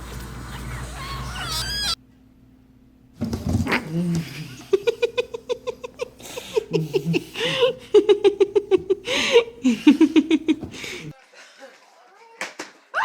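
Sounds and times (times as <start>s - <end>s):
cat chattering: 0.4s - 2.0s
cat breathy cries: 0.6s - 2.0s.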